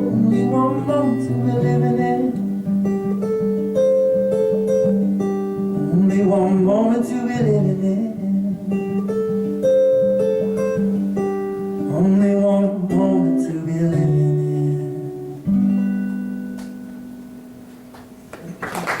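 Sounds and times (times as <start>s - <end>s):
live band guitar chords: 0.0s - 18.7s
audience applause: 18.3s - 19.0s.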